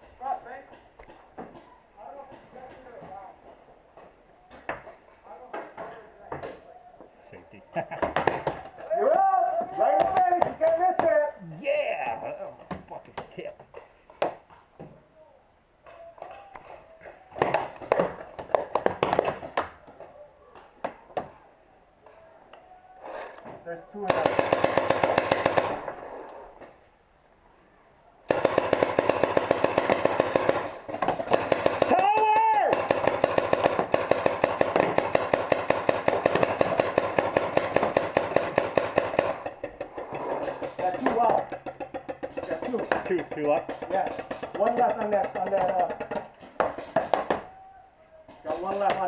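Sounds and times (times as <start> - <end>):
paintball markers firing: 17.3 - 19.8, 24.0 - 26.4, 28.3 - 47.5.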